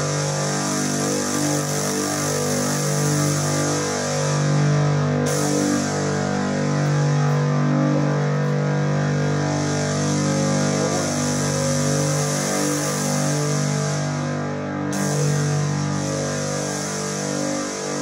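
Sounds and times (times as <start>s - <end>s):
rock band playing sustained chords: 3.9s - 16.9s.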